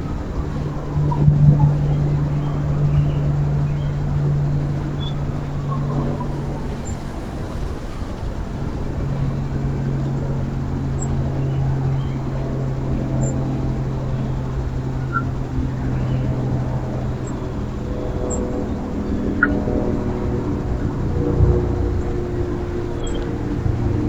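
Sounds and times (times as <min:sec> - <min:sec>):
low mechanical drone: 0:00.0 - 0:24.0
faint bird chirps: 0:23.0 - 0:23.3.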